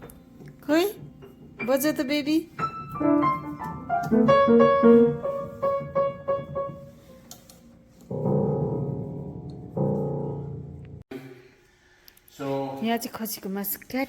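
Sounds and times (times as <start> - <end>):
piano notes and chords: 0.0 - 11.1.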